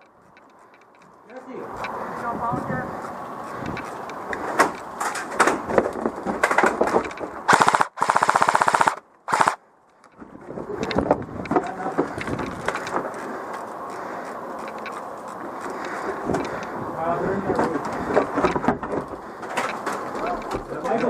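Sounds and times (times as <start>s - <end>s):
airsoft rifle full-auto burst: 7.5s - 9.6s.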